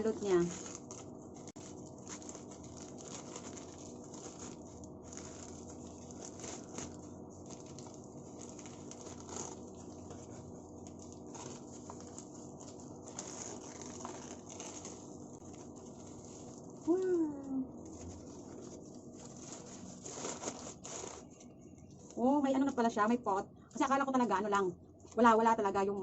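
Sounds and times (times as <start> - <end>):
packaging rustling and crinkling: 0.0 - 22.2
steady low hum: 0.0 - 26.0.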